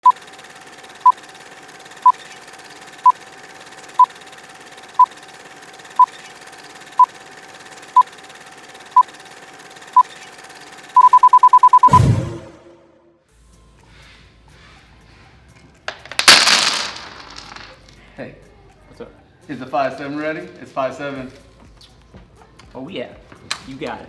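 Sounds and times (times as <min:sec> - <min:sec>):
short high electronic beeps: 0:11.0 - 0:12.9.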